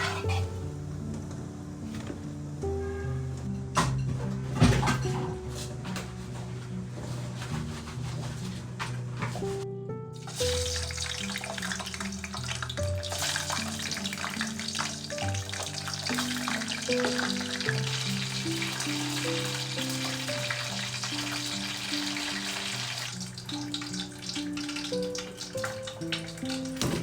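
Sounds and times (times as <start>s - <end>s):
background music: 0.0s - 27.0s
food sizzling in a pan: 10.2s - 27.0s.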